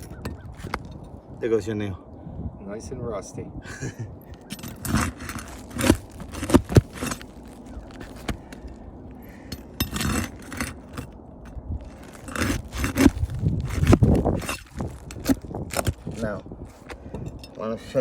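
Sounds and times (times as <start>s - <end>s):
nails scraping and clicking: 4.3s - 8.8s, 9.5s - 11.2s, 11.8s - 16.2s.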